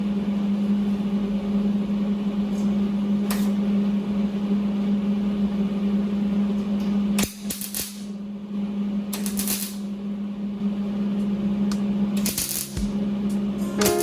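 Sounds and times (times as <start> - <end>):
electrical hum: 8.1 - 14.0
welding arc hissing: 12.2 - 13.0.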